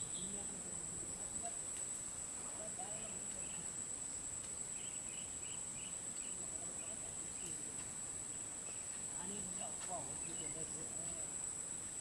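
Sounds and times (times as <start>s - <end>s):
insects droning: 0.0s - 12.0s.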